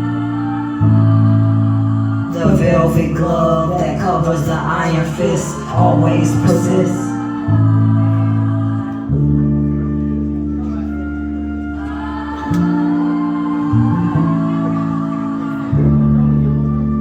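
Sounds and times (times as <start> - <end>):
deep bass: 0.0 - 17.0
sustained keyboard chords: 0.0 - 17.0.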